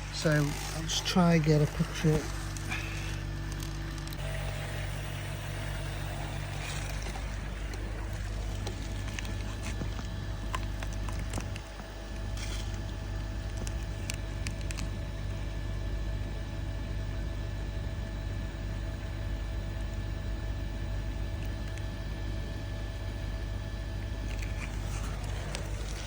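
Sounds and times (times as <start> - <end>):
pond pump humming: 0.0 - 21.3, 22.1 - 26.0.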